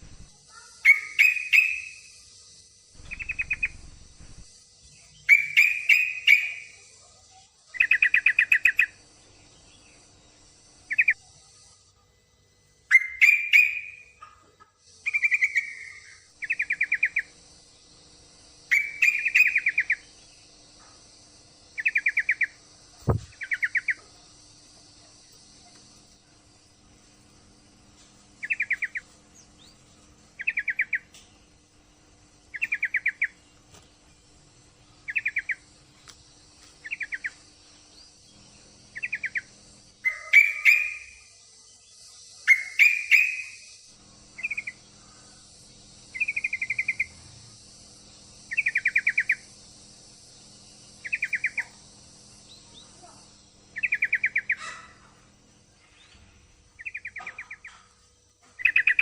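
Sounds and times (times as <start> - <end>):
bird chattering trills: 0.0 - 2.2, 3.0 - 7.0, 7.7 - 10.1, 10.8 - 11.3, 12.9 - 17.5, 18.5 - 20.5, 21.3 - 24.1, 28.4 - 33.6, 34.8 - 35.8, 36.8 - 59.0.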